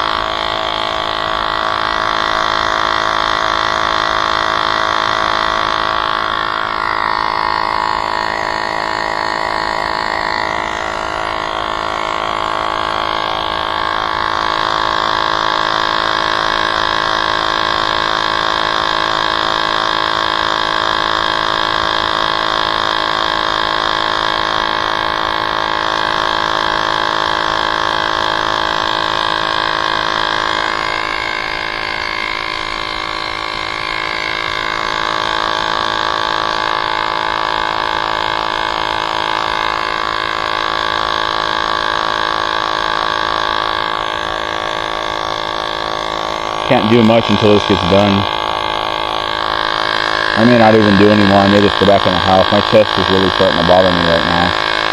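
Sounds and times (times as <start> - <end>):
electric tyre inflator buzzing: 0.0 - 54.9.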